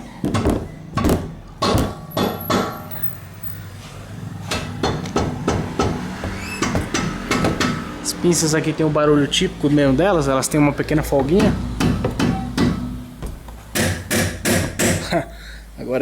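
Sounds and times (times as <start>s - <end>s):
metal tool knocking on metal: 11.0s - 15.2s.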